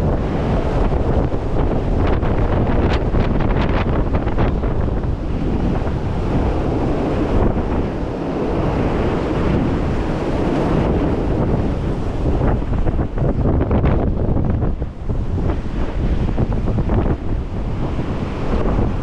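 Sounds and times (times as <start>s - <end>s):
storm wind buffeting microphone: 0.0s - 19.0s.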